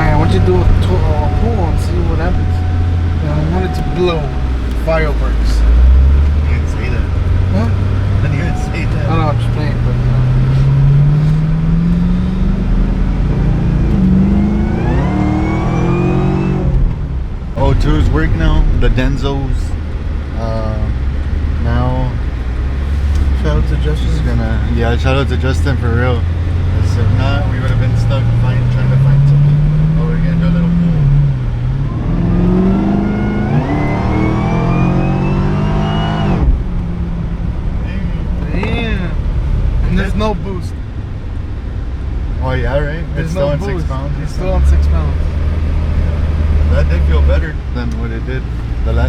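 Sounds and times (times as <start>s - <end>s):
faint rising whine: 0.0s - 7.3s
high whine: 0.0s - 10.5s, 31.8s - 38.4s
car engine accelerating: 0.0s - 49.0s.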